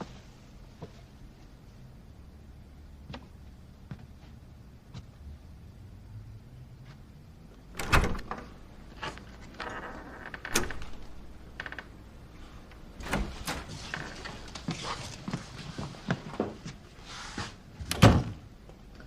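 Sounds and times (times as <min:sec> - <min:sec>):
door clicks and knocks: 0:07.8 - 0:08.6, 0:09.5 - 0:12.0, 0:13.0 - 0:13.8.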